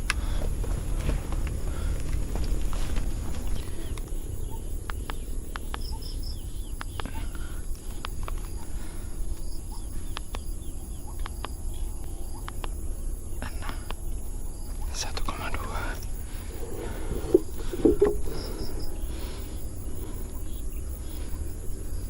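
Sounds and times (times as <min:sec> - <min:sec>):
small birds chirping: 0:00.0 - 0:22.0
light clicks: 0:10.1 - 0:10.5, 0:11.1 - 0:12.8
wind rumbling on microphone: 0:14.4 - 0:22.0.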